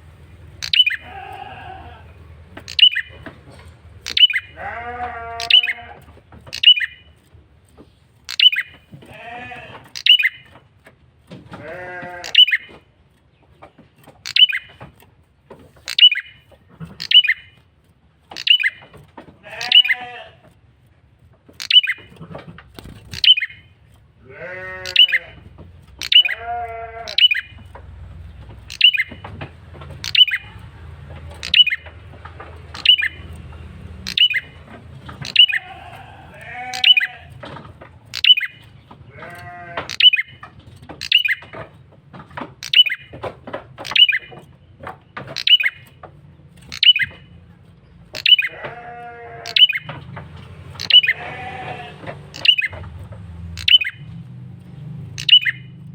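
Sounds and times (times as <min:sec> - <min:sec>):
bird calling high sharp notes: 0:00.4 - 0:03.2, 0:04.0 - 0:05.9, 0:06.5 - 0:07.1, 0:08.3 - 0:08.8, 0:09.9 - 0:10.5, 0:12.1 - 0:12.7, 0:14.2 - 0:14.8, 0:15.9 - 0:16.4, 0:17.0 - 0:17.5, 0:18.4 - 0:18.8, 0:19.5 - 0:20.3, 0:21.6 - 0:22.1, 0:23.0 - 0:23.7, 0:24.6 - 0:25.4, 0:26.0 - 0:27.7, 0:28.7 - 0:29.2, 0:30.0 - 0:30.6, 0:31.4 - 0:31.9, 0:32.7 - 0:33.4, 0:34.0 - 0:34.6, 0:35.2 - 0:37.3, 0:38.1 - 0:38.7, 0:39.9 - 0:40.4, 0:41.0 - 0:41.5, 0:42.6 - 0:43.1, 0:43.8 - 0:44.3, 0:45.4 - 0:46.0, 0:46.7 - 0:47.4, 0:48.1 - 0:48.6, 0:49.2 - 0:49.9, 0:50.8 - 0:52.8, 0:53.6 - 0:54.1, 0:55.2 - 0:55.9.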